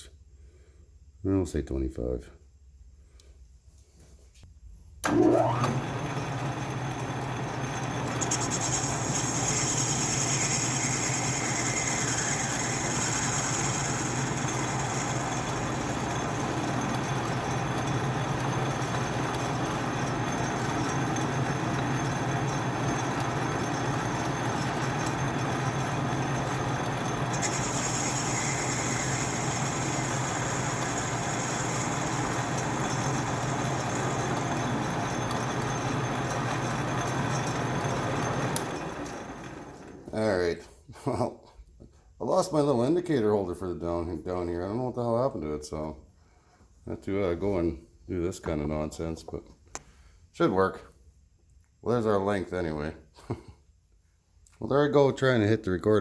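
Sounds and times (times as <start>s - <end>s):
lathe motor hum: 5.0s - 40.1s
high hiss of tool cutting: 8.2s - 15.9s, 27.4s - 33.6s.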